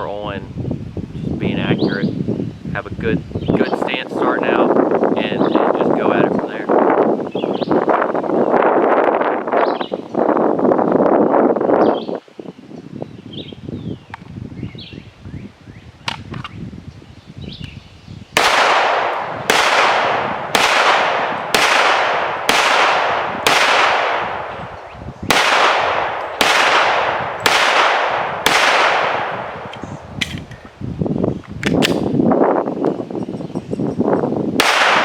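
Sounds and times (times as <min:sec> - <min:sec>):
handgun shots: 0:25.3 - 0:29.4.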